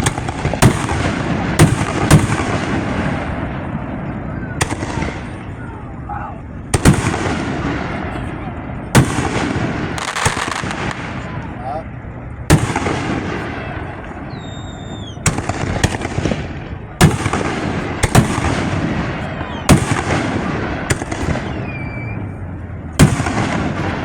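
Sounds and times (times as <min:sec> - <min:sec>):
firework bangs: 0:00.0 - 0:24.0
firework crackling: 0:00.0 - 0:24.0
falling whistles: 0:14.2 - 0:15.3, 0:21.3 - 0:22.4.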